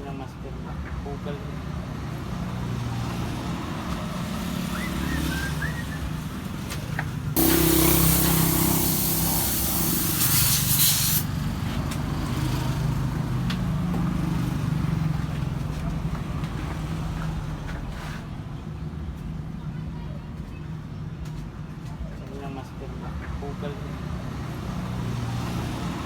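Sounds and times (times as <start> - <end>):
low motor hum: 7.4 - 11.2
paint spray gun hiss: 7.4 - 11.4.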